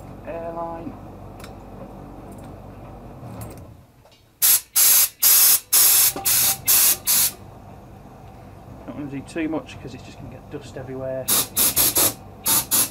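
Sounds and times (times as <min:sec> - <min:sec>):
compressed air blasts: 0:04.4 - 0:07.4, 0:11.3 - 0:12.9.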